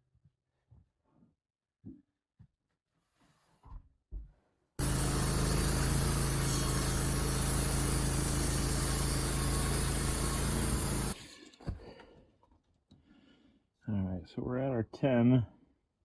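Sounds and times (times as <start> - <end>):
band sawmill cutting log: 4.8 - 11.2.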